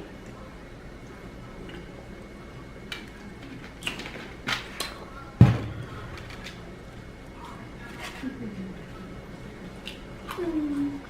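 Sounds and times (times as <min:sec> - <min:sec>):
heavy knock: 0:05.4 - 0:06.2.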